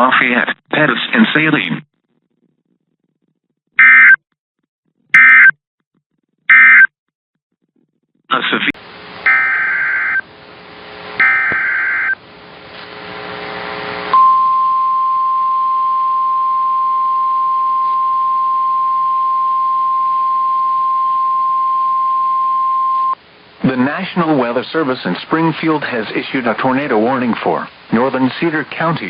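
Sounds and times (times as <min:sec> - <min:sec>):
steady alarm tone: 0:09.2 - 0:10.2, 0:11.2 - 0:12.2.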